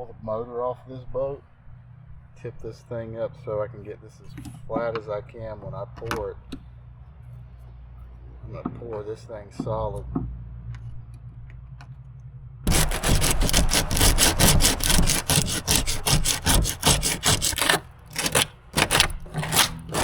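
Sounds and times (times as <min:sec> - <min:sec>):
hand tool scraping fiberglass: 0:12.7 - 0:20.0.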